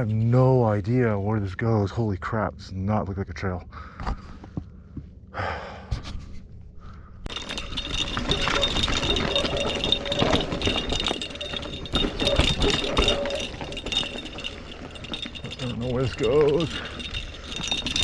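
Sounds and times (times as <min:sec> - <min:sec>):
person breathing: 0:03.7 - 0:07.3
mountain bike rattling over rocks: 0:07.3 - 0:18.0.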